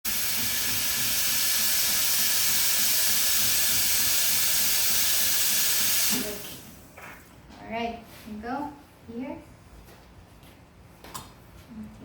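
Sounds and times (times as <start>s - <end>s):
espresso steam wand hissing: 0.1s - 6.9s.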